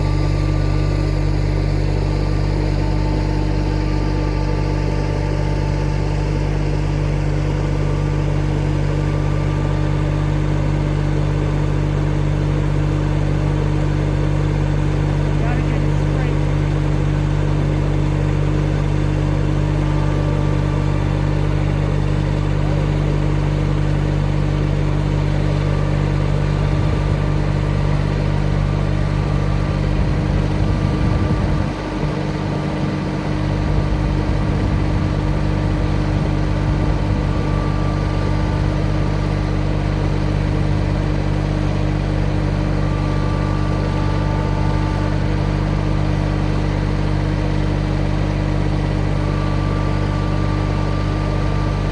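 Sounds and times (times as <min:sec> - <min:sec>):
backhoe engine running: 0:00.0 - 0:51.9.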